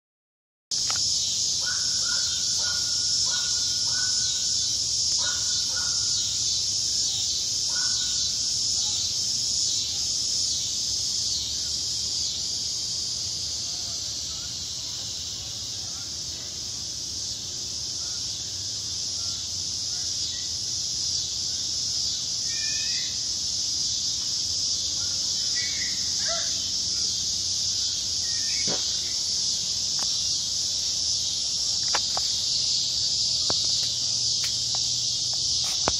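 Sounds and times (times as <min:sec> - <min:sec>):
cicadas buzzing: 0:00.7 - 0:35.9
bird calling: 0:01.6 - 0:04.6, 0:22.4 - 0:23.2, 0:25.0 - 0:27.1, 0:28.2 - 0:29.3
faint chirps: 0:17.3 - 0:34.2.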